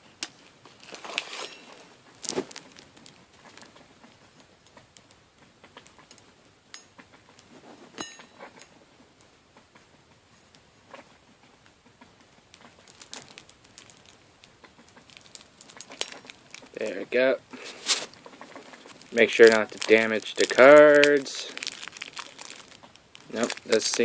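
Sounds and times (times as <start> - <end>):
plastic packaging crinkling: 0.7 - 5.2, 12.5 - 24.0
knife scraping: 1.0 - 1.9.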